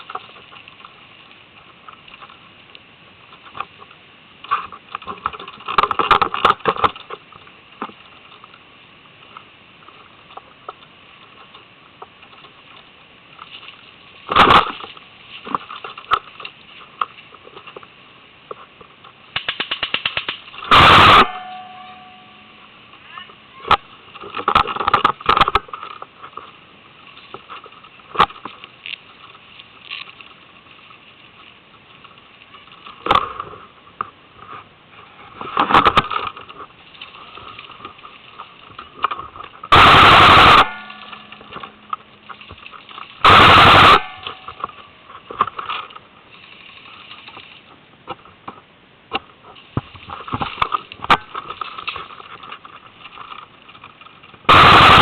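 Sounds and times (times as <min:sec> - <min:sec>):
airsoft gun shots: 0:19.4 - 0:21.7, 0:39.7 - 0:41.3, 0:43.2 - 0:44.4.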